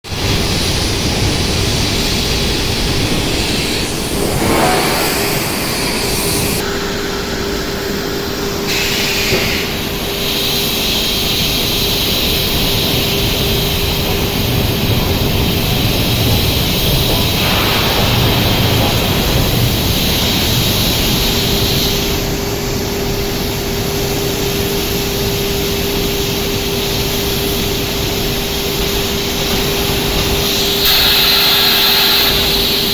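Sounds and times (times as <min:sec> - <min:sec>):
furnace rushing roar: 0:00.1 - 0:08.8
steady hum: 0:00.2 - 0:07.0
door machinery operating: 0:02.9 - 0:06.6.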